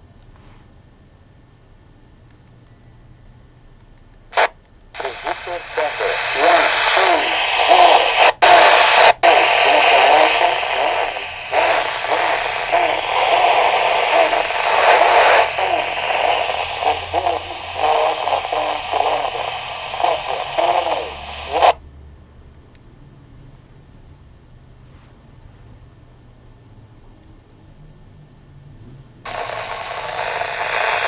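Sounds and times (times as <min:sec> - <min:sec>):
radio static: 0:04.3 - 0:21.8, 0:29.3 - 0:31.0
faint garbled radio voice: 0:04.4 - 0:21.8, 0:29.3 - 0:31.0.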